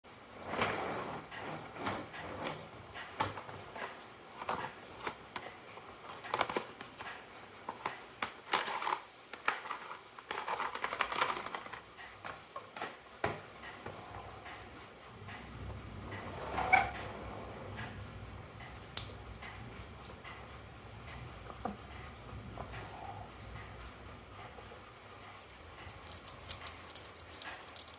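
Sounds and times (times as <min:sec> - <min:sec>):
marbles clattering down wooden run: 0:25.8 - 0:27.9.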